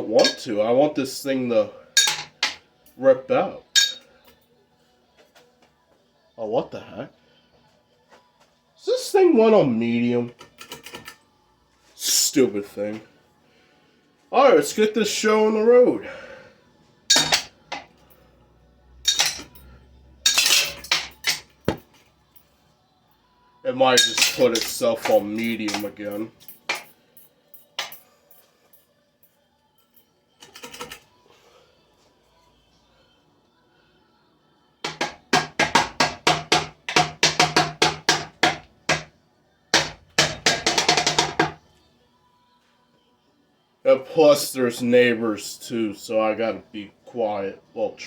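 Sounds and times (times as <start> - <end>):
metallic clanks and clatters: 2.0 - 2.6, 17.1 - 17.9, 19.1 - 19.6, 20.2 - 21.9, 24.0 - 27.0, 30.4 - 31.0.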